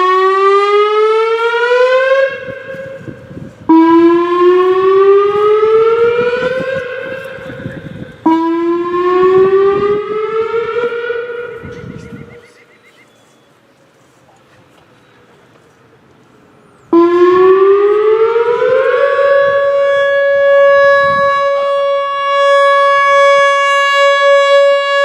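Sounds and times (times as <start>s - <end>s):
outdoor warning siren wailing: 0.0s - 12.8s, 16.9s - 25.0s.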